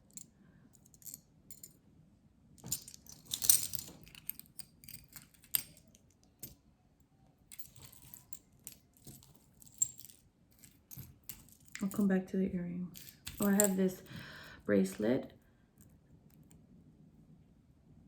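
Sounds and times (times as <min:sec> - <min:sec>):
jewelry jingling and clinking: 0:00.0 - 0:01.8, 0:02.6 - 0:06.6, 0:07.4 - 0:12.1, 0:12.9 - 0:15.3.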